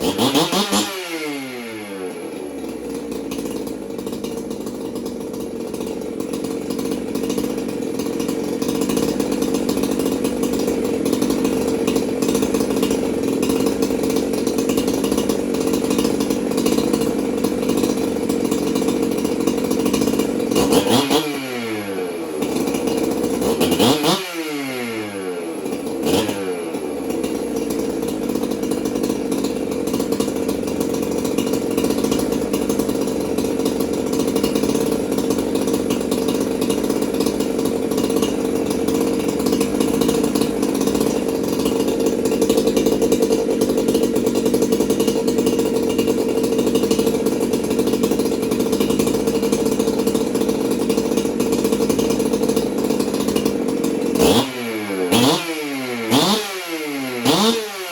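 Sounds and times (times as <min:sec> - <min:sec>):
chainsaw revving and idling: 0:00.0 - 0:57.9.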